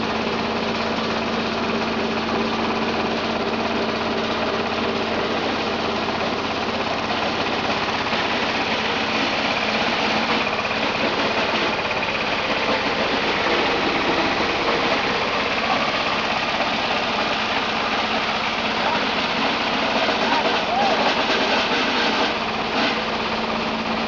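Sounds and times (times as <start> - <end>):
wood shredder engine running: 0.0 - 24.0.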